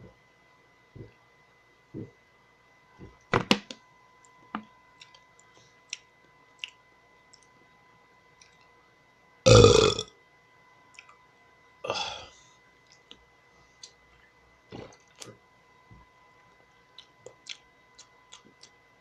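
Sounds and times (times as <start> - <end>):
person belching: 9.5 - 10.1, 11.9 - 12.3.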